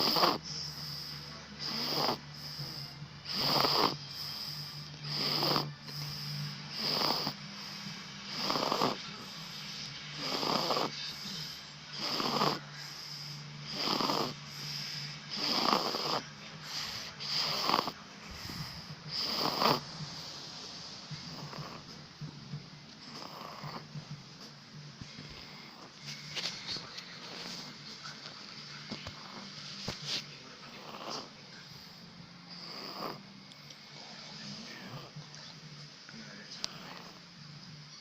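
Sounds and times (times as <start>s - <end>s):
child snoring: 0.0s - 9.4s, 10.1s - 19.9s, 21.3s - 21.9s, 23.0s - 24.0s, 30.6s - 31.4s, 32.5s - 33.3s.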